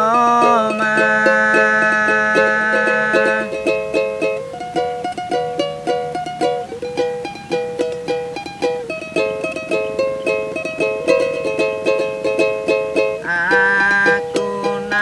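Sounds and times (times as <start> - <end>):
strummed acoustic string instrument: 0.0 - 15.0.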